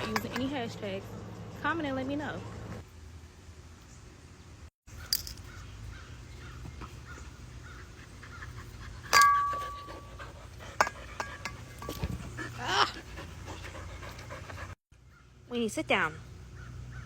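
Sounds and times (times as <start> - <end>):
sharp metallic clink: 5.0 - 5.5, 9.0 - 10.1
dog panting softly: 12.2 - 14.8.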